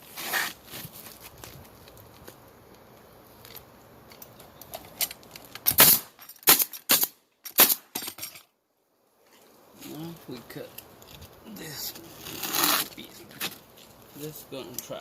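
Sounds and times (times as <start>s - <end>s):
nail gun shots: 5.7s - 8.0s.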